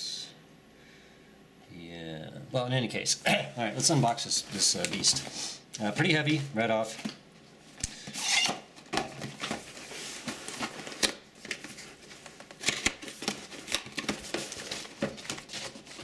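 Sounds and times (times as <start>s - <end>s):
packing rustling: 8.0s - 16.0s.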